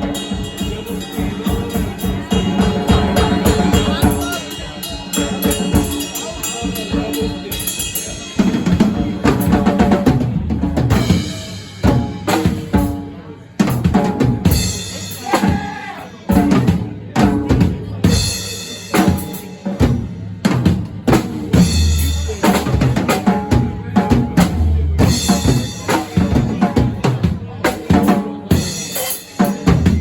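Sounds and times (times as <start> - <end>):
pitched instruments playing: 0.0 - 8.6
bass drum and snare: 18.9 - 30.0.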